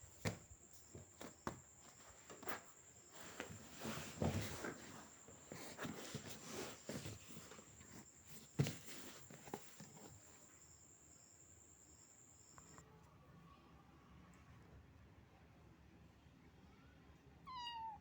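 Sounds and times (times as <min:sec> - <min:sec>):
faint shuffling and handling: 0:00.0 - 0:12.8.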